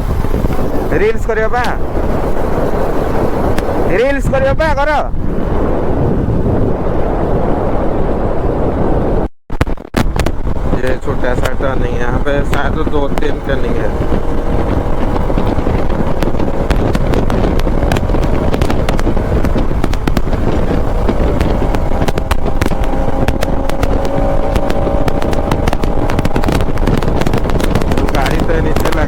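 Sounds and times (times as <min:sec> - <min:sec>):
motorcycle engine running: 0:00.0 - 0:04.0, 0:10.3 - 0:29.0
wind rush on microphone: 0:00.0 - 0:29.0.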